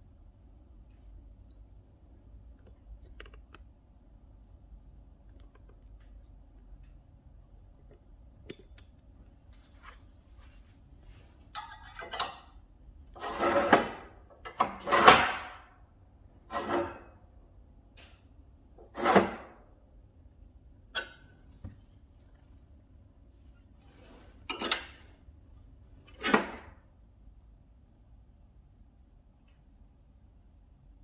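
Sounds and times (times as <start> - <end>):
scraping sliding noises: 13.2 - 15.4, 16.5 - 17.1, 18.9 - 19.5.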